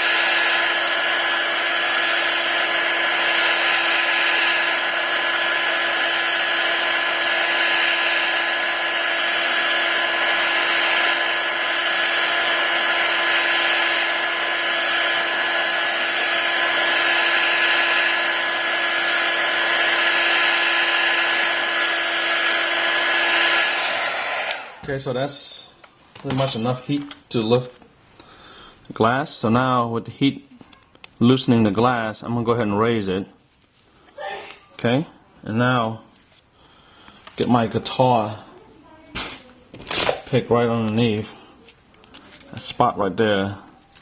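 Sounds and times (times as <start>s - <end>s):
heat gun blowing air: 0.0s - 25.0s.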